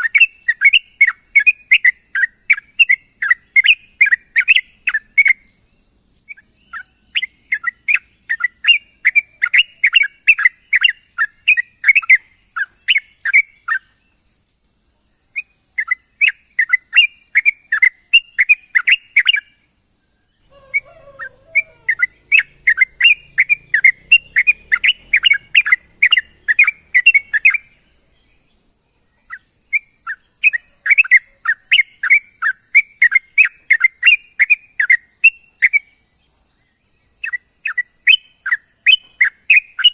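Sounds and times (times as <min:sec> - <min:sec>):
bird chattering call: 0:20.4 - 0:28.3.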